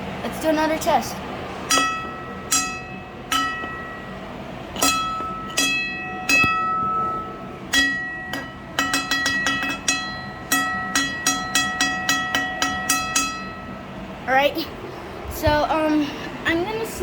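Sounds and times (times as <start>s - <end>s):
fire alarm bell gong struck: 1.7s - 13.8s.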